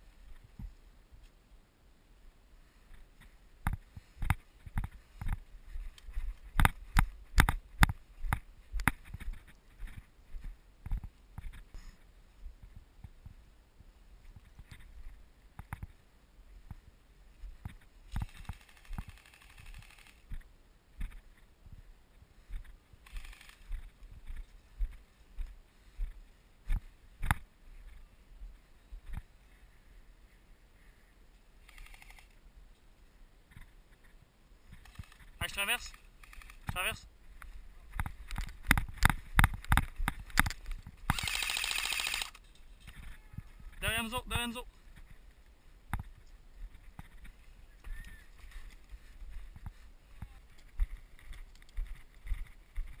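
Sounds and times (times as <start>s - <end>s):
running footsteps: 2.9s - 13.4s, 16.6s - 29.3s, 33.5s - 53.0s
rapid even ticking and hiss: 17.8s - 20.4s, 38.2s - 42.6s
airsoft gun firing full-auto burst: 41.1s - 42.4s.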